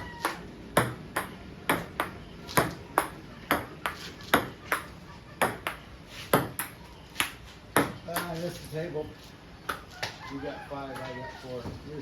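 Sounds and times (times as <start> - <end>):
ping pong ball hitting paddles: 0.0 - 8.4
ping pong ball bouncing on table: 0.2 - 8.4.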